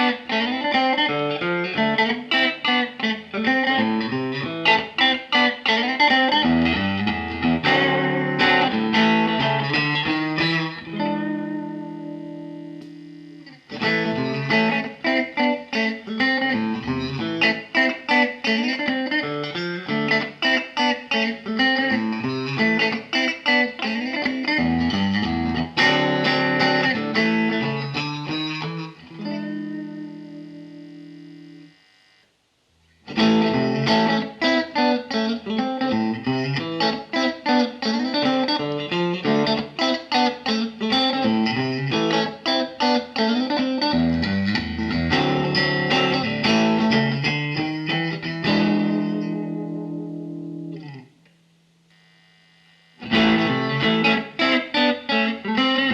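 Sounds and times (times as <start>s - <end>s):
fast electric guitar lines: 0.0s - 31.7s, 33.0s - 51.0s, 53.0s - 55.9s
ringing guitar chord: 0.0s - 31.9s.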